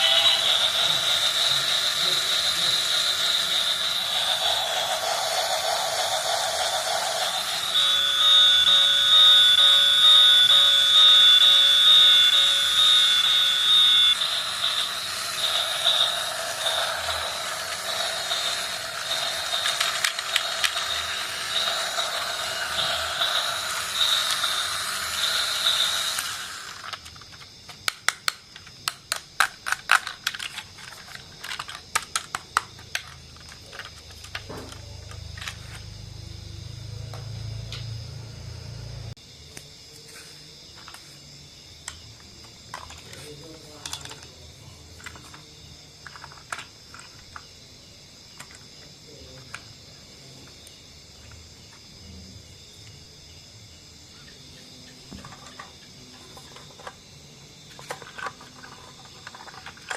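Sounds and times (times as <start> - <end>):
high steady tones: 0.0 - 26.9
model trains running: 0.0 - 27.4, 30.0 - 39.1.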